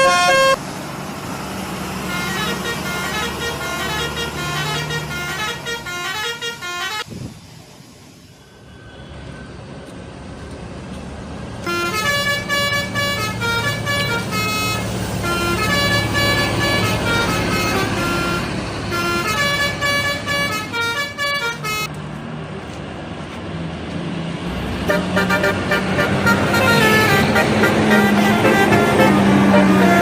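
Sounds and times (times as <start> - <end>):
multi-tone air horn tune: 0.0 - 0.6, 2.0 - 7.1, 11.6 - 21.9, 24.9 - 30.0
bus engine running: 0.0 - 30.0.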